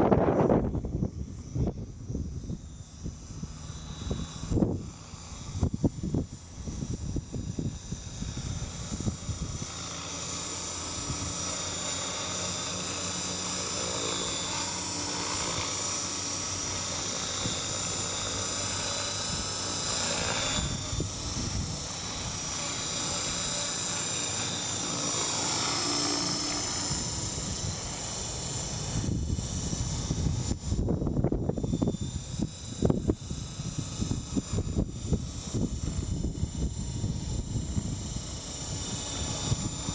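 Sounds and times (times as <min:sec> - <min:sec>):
wind buffeting microphone: 0:00.0 - 0:09.8, 0:19.2 - 0:22.5, 0:26.7 - 0:39.9
model helicopter engine and rotor: 0:00.0 - 0:39.9.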